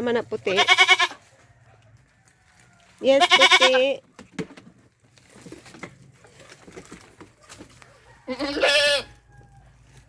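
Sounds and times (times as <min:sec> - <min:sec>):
goat bleating: 0:00.4 - 0:01.2, 0:03.1 - 0:04.0, 0:08.3 - 0:09.2
faint rustles and clicks: 0:04.1 - 0:08.3.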